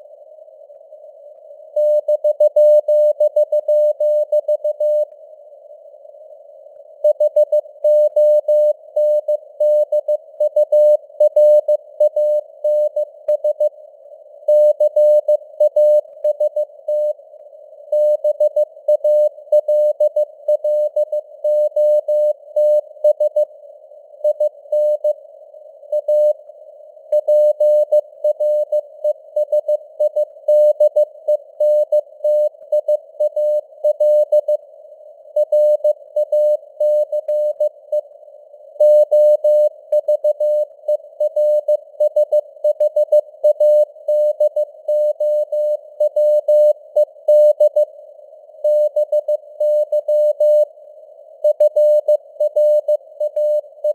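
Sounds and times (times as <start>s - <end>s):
faint radio noise hiss: 0.0s - 2.0s.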